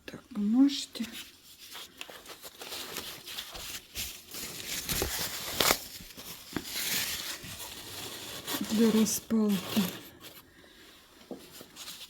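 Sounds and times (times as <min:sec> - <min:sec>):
toilet paper tearing and crumpling: 0:00.9 - 0:10.4.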